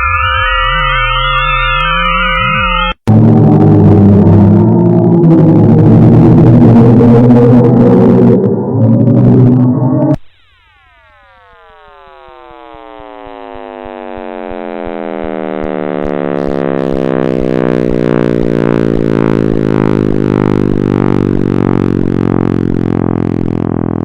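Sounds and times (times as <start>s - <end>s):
low throbbing drone: 0.0s - 10.2s, 13.2s - 24.0s
buzzy electronic tone gliding down: 0.0s - 24.0s.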